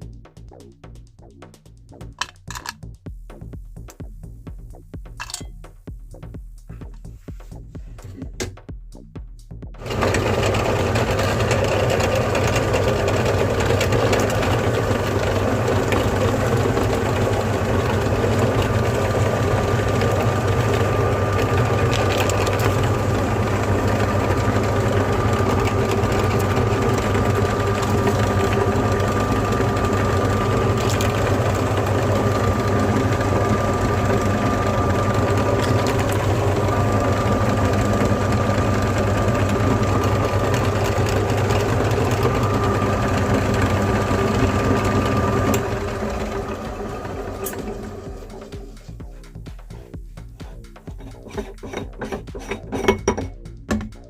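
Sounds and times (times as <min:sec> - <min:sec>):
electric grinder motor whining: 0:09.8 - 0:49.0.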